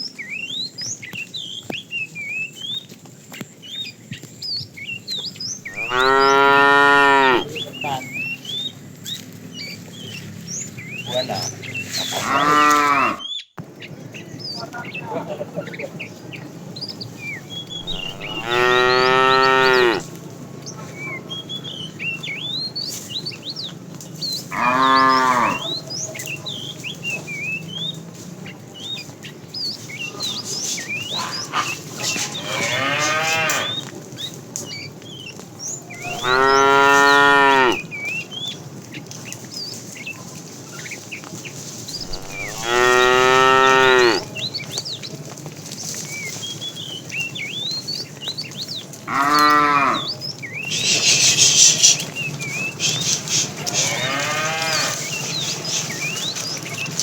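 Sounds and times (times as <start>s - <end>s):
birds chirping: 0.0s - 57.0s
cattle mooing: 5.7s - 7.6s, 12.0s - 13.2s, 17.8s - 20.1s, 24.5s - 25.8s, 31.2s - 33.8s, 36.0s - 37.8s, 42.0s - 44.4s, 49.1s - 50.1s, 53.6s - 55.2s.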